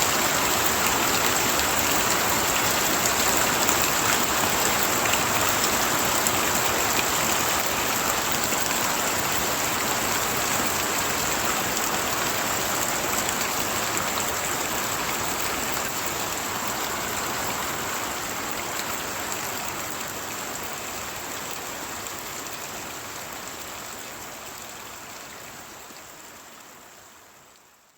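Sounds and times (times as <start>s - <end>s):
heavy rain pouring: 0.0s - 24.0s.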